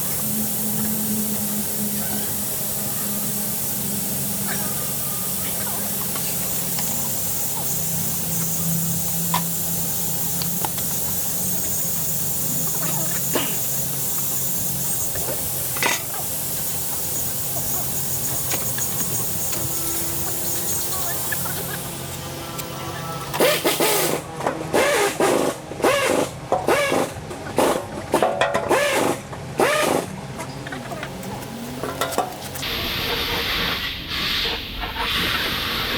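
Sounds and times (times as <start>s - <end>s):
spraying hiss: 0.0s - 22.4s
motor hum: 0.0s - 33.2s.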